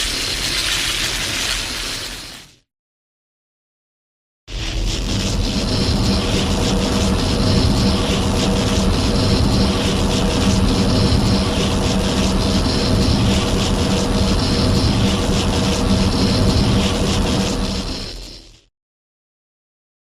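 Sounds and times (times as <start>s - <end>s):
loud engine-like rumble: 4.9s - 18.2s.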